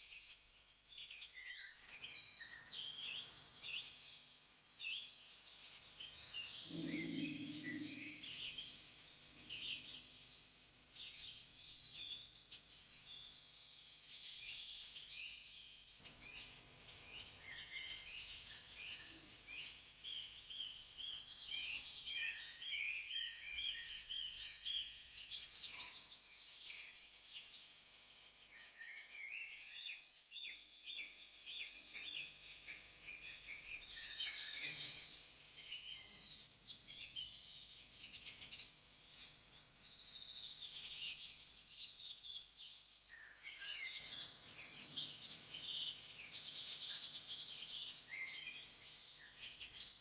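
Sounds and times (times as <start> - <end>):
birds chirping: 4.7 - 13.1.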